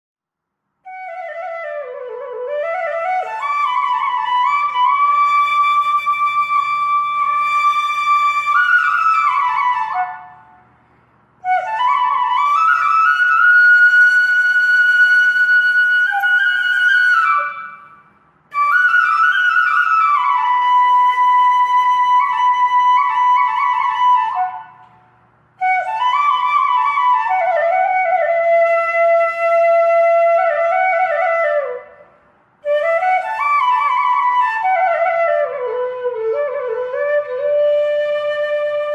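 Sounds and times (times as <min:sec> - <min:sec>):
slow flute-like melody: 0:00.8 - 0:10.6, 0:11.4 - 0:25.0, 0:25.6 - 0:38.9.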